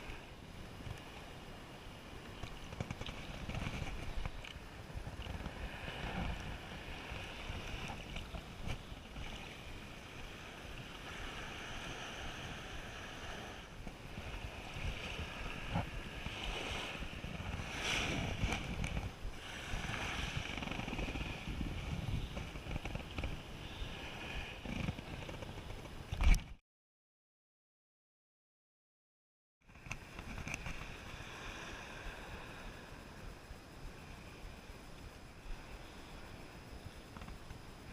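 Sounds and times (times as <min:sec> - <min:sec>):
surf washing on beach: 0:00.0 - 0:26.1, 0:29.7 - 0:37.9
wind buffeting microphone: 0:01.6 - 0:26.5.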